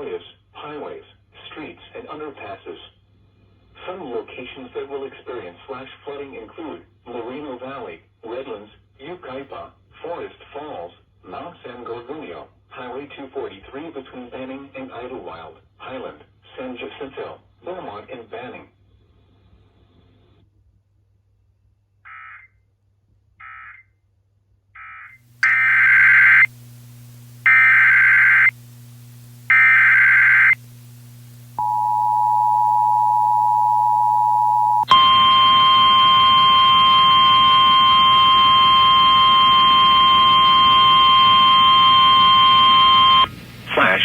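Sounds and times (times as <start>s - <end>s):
buzzy steady tone with hiss: 25.4s - 44.0s
screeching data bursts: 25.4s - 44.0s.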